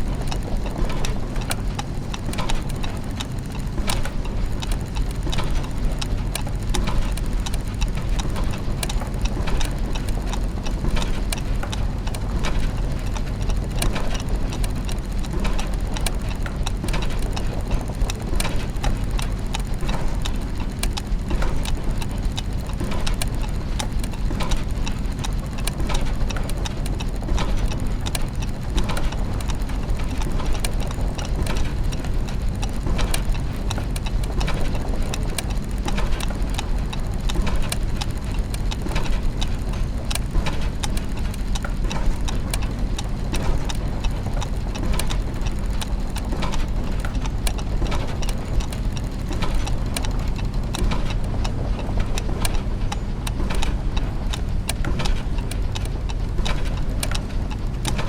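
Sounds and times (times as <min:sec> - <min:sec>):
clockwork gears ticking: 0:00.0 - 0:58.0
low mechanical hum: 0:00.0 - 0:58.0.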